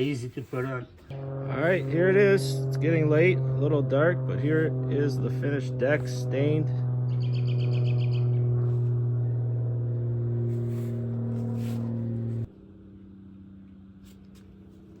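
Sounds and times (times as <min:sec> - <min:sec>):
faint higher hum: 0:00.0 - 0:15.0
low droning hum: 0:00.0 - 0:15.0.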